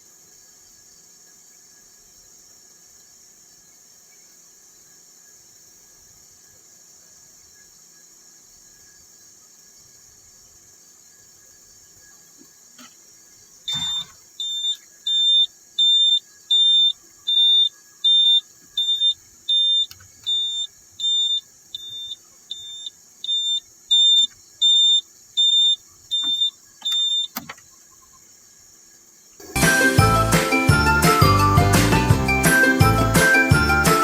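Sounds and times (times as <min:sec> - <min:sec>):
high-pitched warning buzzer beeps: 0:13.7 - 0:27.6.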